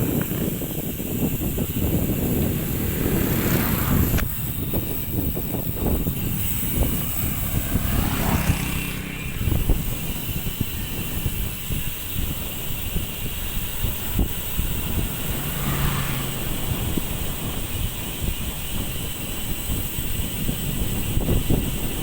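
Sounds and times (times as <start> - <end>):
engine humming: 0.0 - 22.0
wind buffeting microphone: 0.0 - 22.0.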